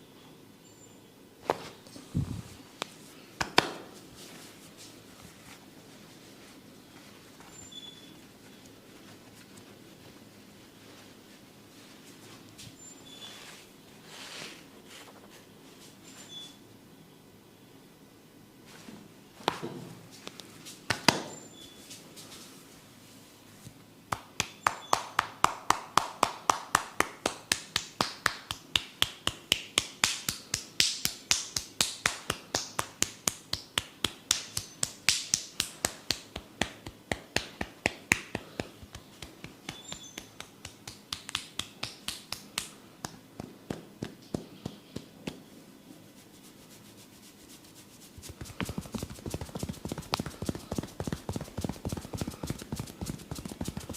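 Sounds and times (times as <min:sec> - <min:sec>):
quick tapping on head: 0:48.2 - 0:53.9.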